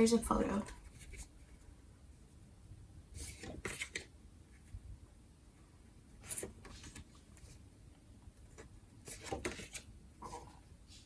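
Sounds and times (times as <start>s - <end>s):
postcards rustling: 3.2s - 4.1s, 6.2s - 7.6s, 8.4s - 11.0s.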